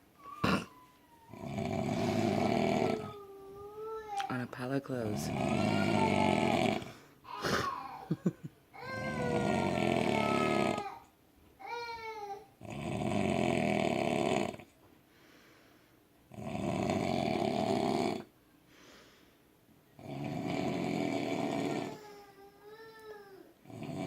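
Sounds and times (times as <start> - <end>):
man snoring loudly: 1.3 - 3.2, 5.1 - 7.0, 8.9 - 11.0, 12.6 - 14.6, 16.3 - 18.3, 20.0 - 22.0, 23.6 - 24.0.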